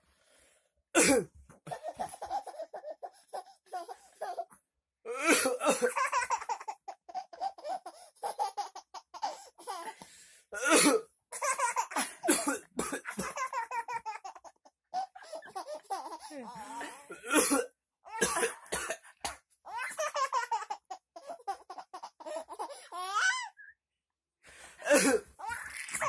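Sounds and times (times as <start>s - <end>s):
person coughing hard: 1.0s - 1.3s, 5.1s - 6.0s, 10.6s - 11.1s, 12.0s - 13.4s, 16.6s - 19.4s, 24.8s - 25.3s.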